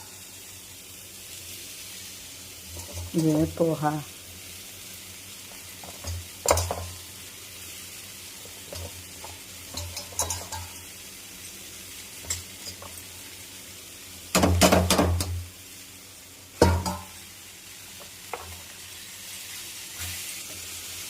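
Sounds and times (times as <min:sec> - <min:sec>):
faint sizzle: 0:00.0 - 0:21.0
spatula stirring in a pan: 0:02.6 - 0:03.6, 0:05.4 - 0:11.0, 0:12.1 - 0:13.3, 0:17.8 - 0:21.0
spatula scraping and clinking pan: 0:02.7 - 0:03.4, 0:08.7 - 0:10.8.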